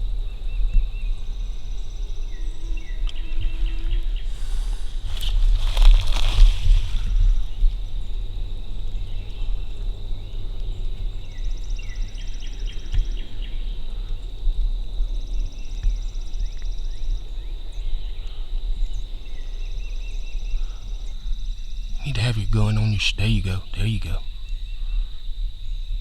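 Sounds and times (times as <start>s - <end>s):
low rumble on microphone: 3.2s - 11.3s.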